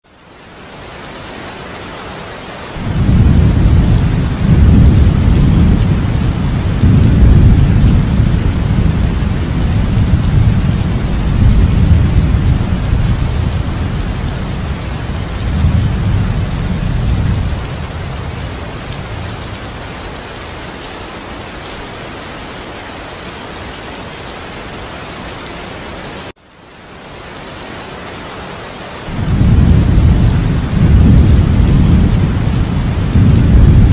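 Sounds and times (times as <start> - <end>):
heavy rain falling: 0.1 - 33.9
rolling thunder: 2.8 - 20.1, 29.1 - 33.9.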